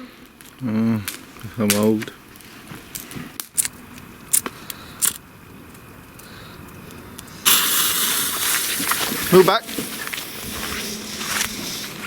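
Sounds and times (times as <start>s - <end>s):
firework fuse hissing: 7.2s - 12.0s.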